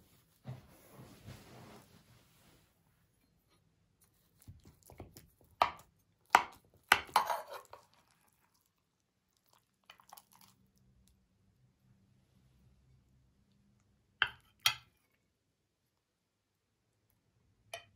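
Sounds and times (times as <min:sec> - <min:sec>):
knife chopping on cutting board: 0:04.9 - 0:07.6.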